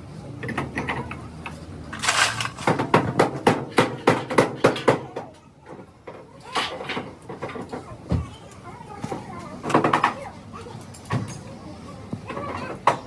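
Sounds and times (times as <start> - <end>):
scraping burst: 2.0 - 2.8.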